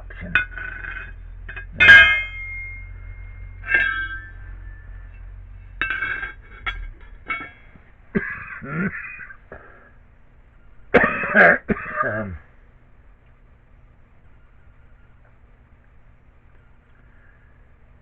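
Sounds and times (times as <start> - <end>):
light metal clinks: 0.0 - 9.4
steel pieces clanging: 0.0 - 10.0.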